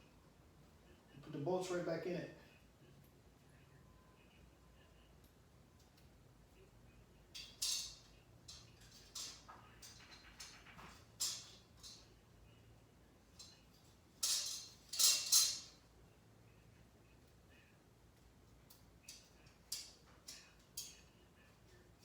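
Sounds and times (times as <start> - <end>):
metal parts clinking and rattling: 7.4 - 12.1, 13.4 - 15.8.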